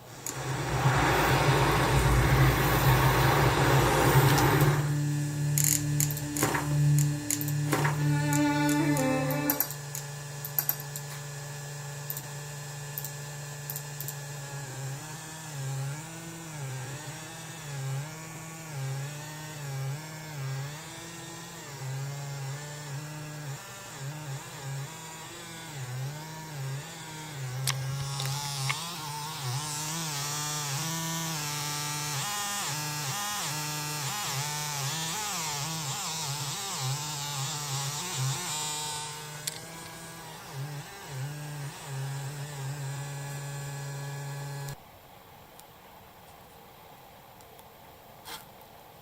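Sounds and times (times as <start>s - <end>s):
hiss: 0.0s - 9.6s
speaker interference buzzing hum: 0.0s - 10.4s
click: 39.4s - 39.6s.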